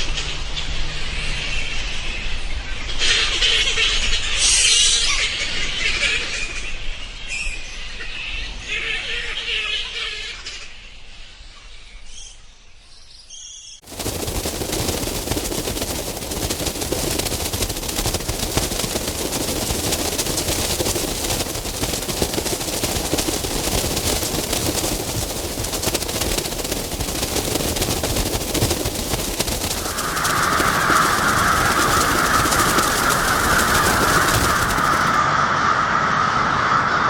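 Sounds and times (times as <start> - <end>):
rapid rattle of bat clicks: 13.8 - 35.2
bat chirps: 13.9 - 35.2.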